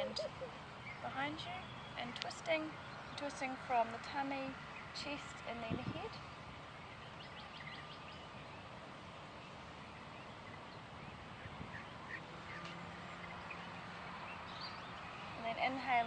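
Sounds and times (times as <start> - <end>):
steady faint hiss: 0.0 - 16.0.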